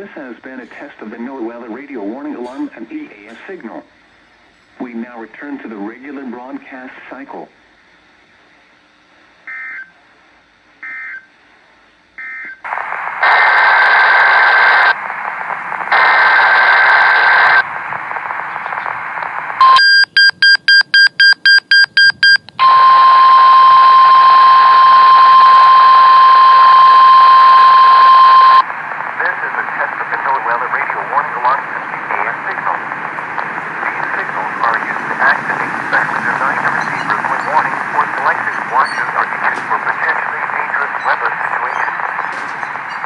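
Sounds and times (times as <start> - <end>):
radio static: 0.0 - 3.9, 4.8 - 7.5, 12.7 - 20.0, 22.6 - 43.0
steady warning alarm tone: 9.5 - 9.9, 10.8 - 11.3, 12.2 - 12.6, 19.6 - 28.6, 33.2 - 43.0
rapid beeps: 19.6 - 22.8, 35.9 - 43.0
short beeps: 19.6 - 28.6
buzzing data bursts: 33.5 - 43.0.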